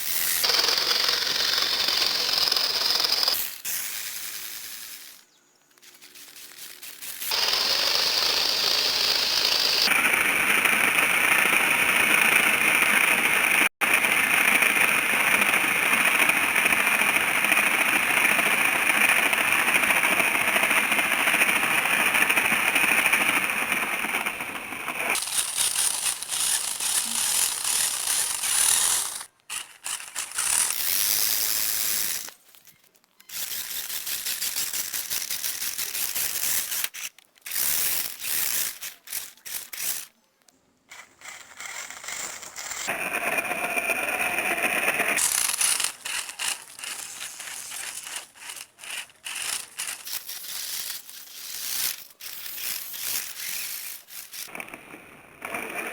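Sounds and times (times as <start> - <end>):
toy electric motor and gearbox: 0.0 - 55.9
wheels scraping over ground: 42.8 - 50.3.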